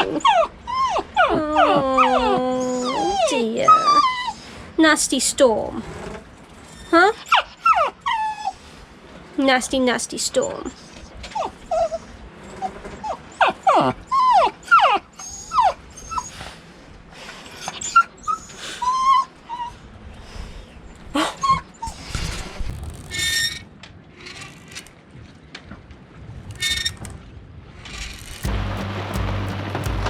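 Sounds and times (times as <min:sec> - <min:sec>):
dog whining and whimpering: 0:00.0 - 0:04.7, 0:06.7 - 0:08.7, 0:10.4 - 0:16.5, 0:17.5 - 0:20.0, 0:21.2 - 0:22.4.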